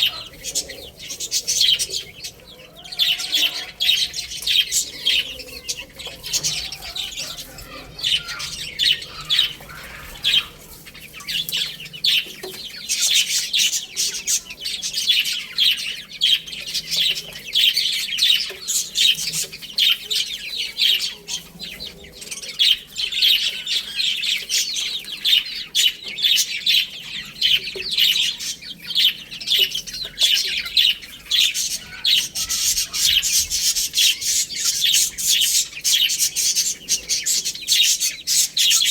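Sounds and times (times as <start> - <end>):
baby chicks peeping: 0.0 - 38.9.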